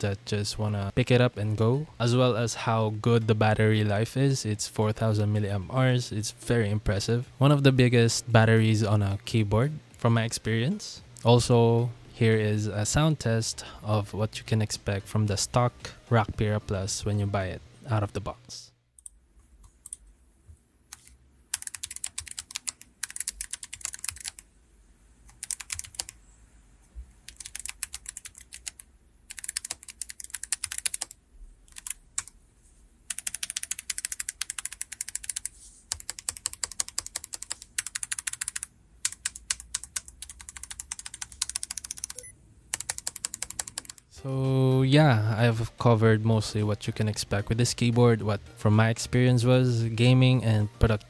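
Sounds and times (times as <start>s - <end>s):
mechanical keyboard key clicks: 33.1s - 44.0s.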